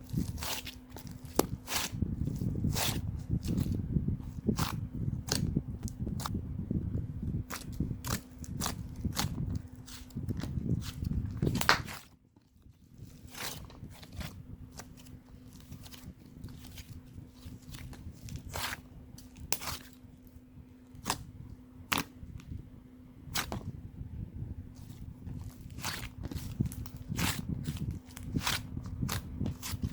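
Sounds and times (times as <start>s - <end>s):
hands squeezing play clay: 0.0s - 6.3s, 7.4s - 12.2s, 24.7s - 29.9s
steady low hum: 0.0s - 29.9s.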